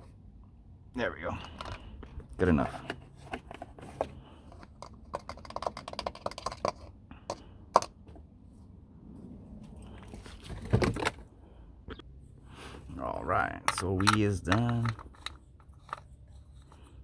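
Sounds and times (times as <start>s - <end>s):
plastic jug clicks and rattles: 1.4s - 8.0s, 13.6s - 17.0s.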